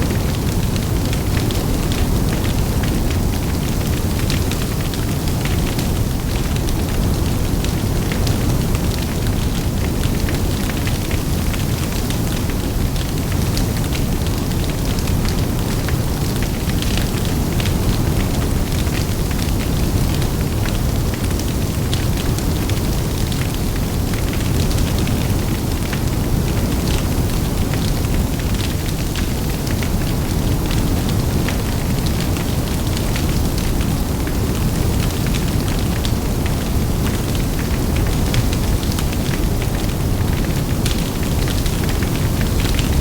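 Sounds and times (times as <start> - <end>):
fire crackling and popping: 0.0 - 43.0
wind: 0.0 - 43.0.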